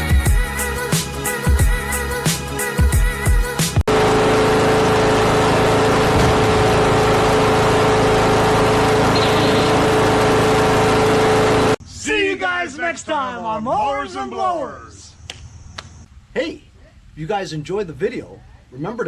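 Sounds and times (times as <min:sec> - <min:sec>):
music: 0:00.0 - 0:03.8
small gasoline engine running: 0:03.9 - 0:11.8.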